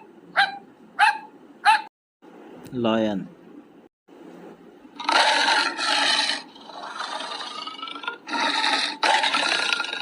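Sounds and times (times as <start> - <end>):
lion roaring: 5.0 - 10.0.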